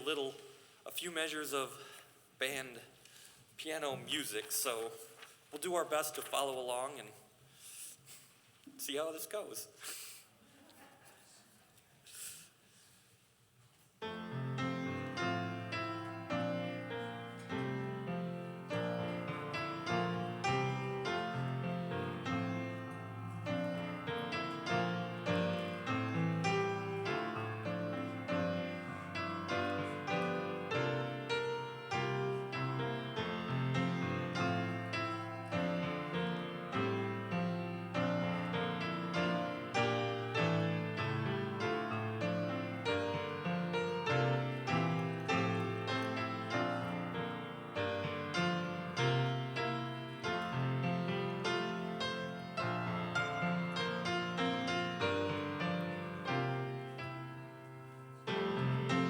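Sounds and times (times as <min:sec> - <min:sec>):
piano playing worship song: 0:14.1 - 0:59.0.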